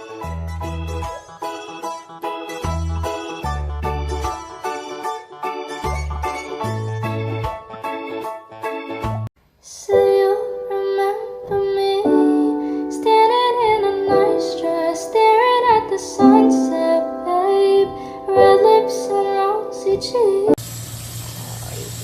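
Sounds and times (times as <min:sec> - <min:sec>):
gentle melody with gliding notes: 0:10.0 - 0:20.6.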